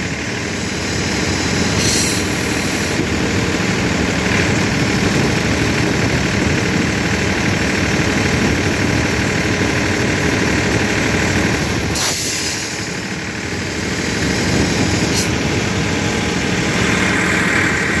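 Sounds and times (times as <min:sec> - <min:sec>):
air compressor running: 0:00.0 - 0:18.0
air hissing: 0:00.5 - 0:03.0, 0:11.9 - 0:13.1, 0:14.0 - 0:15.4.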